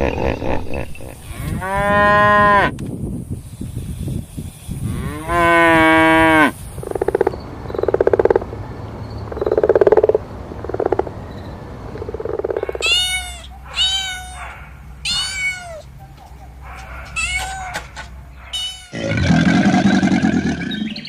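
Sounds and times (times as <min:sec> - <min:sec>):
rasping croaking calls: 0:04.8 - 0:08.6, 0:09.3 - 0:21.0
cat meowing: 0:12.6 - 0:15.9, 0:17.0 - 0:19.0.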